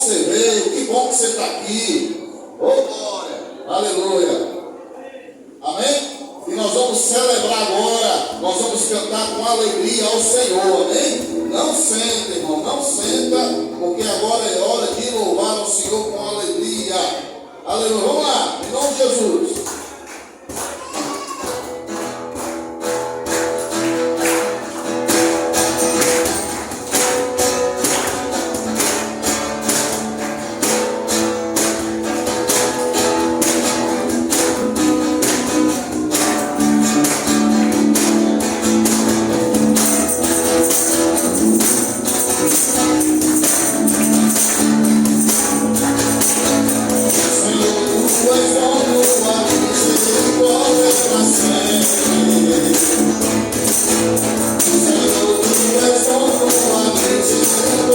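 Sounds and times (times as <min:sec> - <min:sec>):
church band playing: 0:00.0 - 0:04.6, 0:05.8 - 0:57.9
strummed strings: 0:21.6 - 0:57.9
tambourine shaking: 0:21.6 - 0:57.9
singing: 0:47.0 - 0:57.9.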